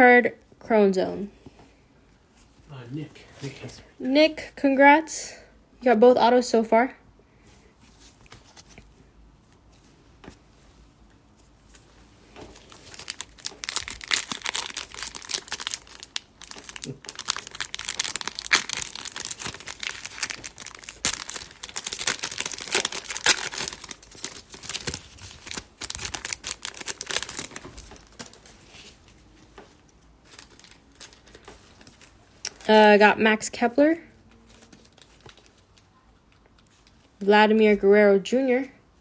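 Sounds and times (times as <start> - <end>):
wrappers crinkling and tearing: 12.3 - 29.2, 29.8 - 32.9, 34.3 - 37.1.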